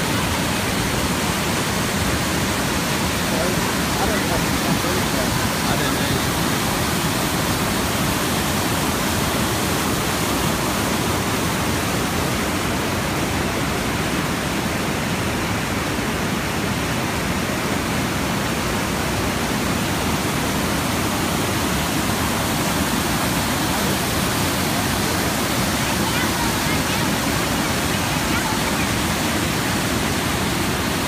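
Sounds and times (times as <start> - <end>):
river water rushing: 0.0 - 31.0.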